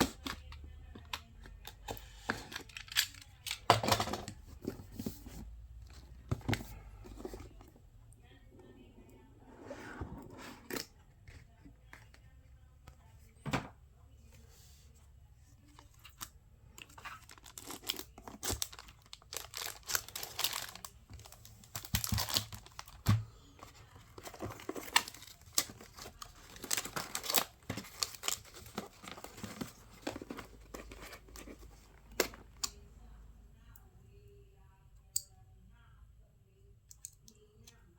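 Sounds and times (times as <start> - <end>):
paper and plastic tearing: 17.0 - 23.1, 23.7 - 32.4.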